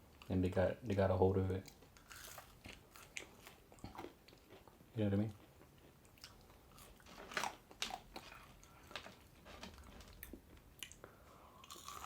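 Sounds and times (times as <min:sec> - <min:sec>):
chewing and biting food: 0:02.0 - 0:04.8, 0:05.4 - 0:09.3, 0:11.6 - 0:12.0.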